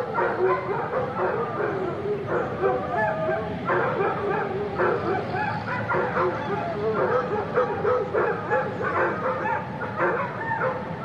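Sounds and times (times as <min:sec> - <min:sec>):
dogs barking and yipping: 0:00.0 - 0:11.0.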